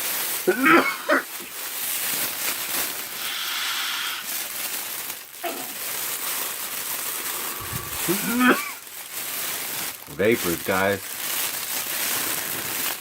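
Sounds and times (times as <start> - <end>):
person inhaling vapor hiss: 3.1 - 4.5, 5.5 - 9.2, 12.1 - 12.9
throaty sound: 6.2 - 8.8.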